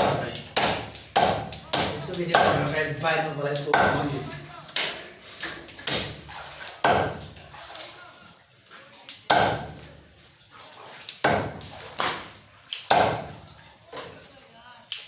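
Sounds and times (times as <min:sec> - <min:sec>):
cleaver chopping meat on block: 0:00.0 - 0:02.7, 0:03.7 - 0:04.1, 0:05.8 - 0:07.3, 0:09.3 - 0:09.8, 0:11.2 - 0:11.7, 0:12.9 - 0:13.4.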